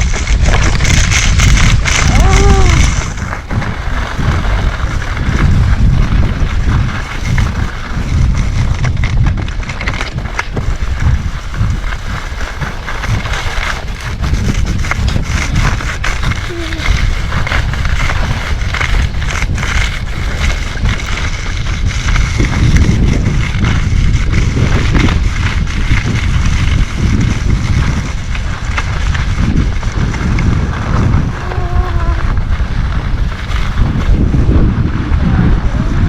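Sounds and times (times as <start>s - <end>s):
wind buffeting microphone: 0.0s - 36.0s.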